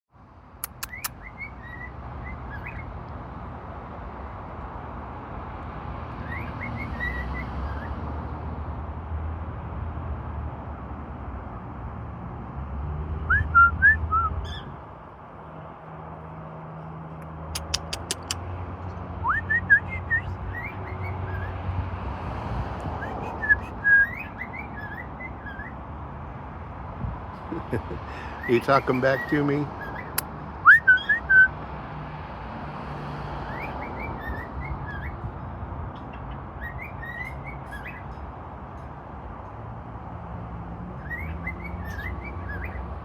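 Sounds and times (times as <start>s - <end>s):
quick run of clicks: 17.6s - 18.4s
cockatiel whistling: 23.2s - 25.7s, 30.6s - 31.5s.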